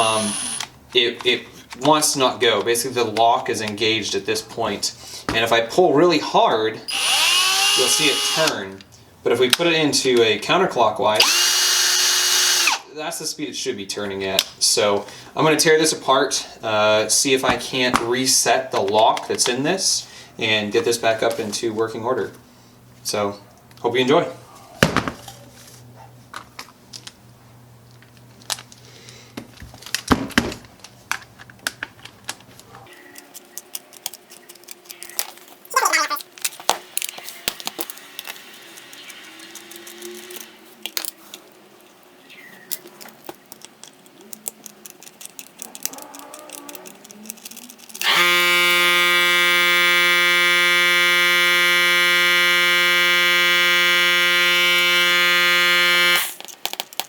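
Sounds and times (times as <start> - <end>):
loud steady buzzing tone: 0.0 - 0.7, 6.9 - 8.5, 48.0 - 56.4
drill parts clicking and rattling: 0.0 - 1.9, 6.9 - 8.6, 11.2 - 12.8, 42.8 - 57.0.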